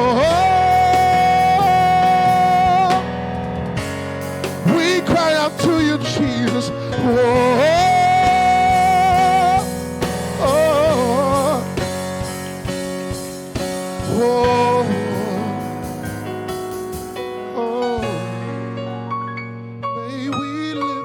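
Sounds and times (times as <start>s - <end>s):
person singing wordless notes: 0.0s - 3.4s, 4.6s - 12.3s, 13.6s - 16.3s, 17.2s - 19.0s, 20.0s - 21.0s
drum hits: 0.0s - 18.4s
keyboard chords: 0.0s - 21.0s.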